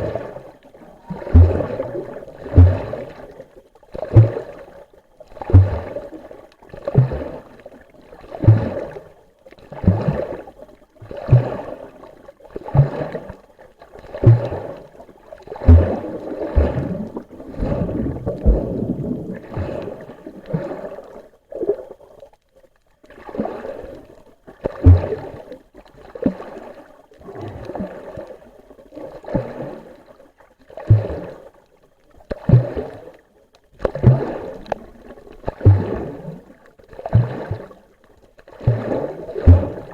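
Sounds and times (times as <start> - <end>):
water rushing: 0.0 - 3.4, 14.0 - 21.2
low thumps: 1.3 - 1.8, 2.6 - 3.0, 15.6 - 19.8, 39.5 - 39.8
underwater breathing: 15.5 - 21.2.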